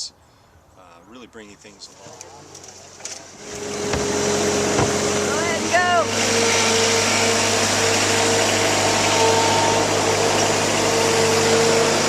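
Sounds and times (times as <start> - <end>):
machine motor running: 3.4 - 12.0.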